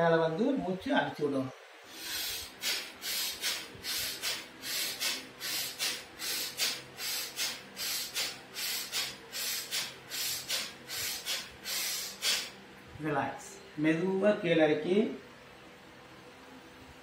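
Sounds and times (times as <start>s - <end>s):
man breathing rapidly: 1.8s - 12.6s.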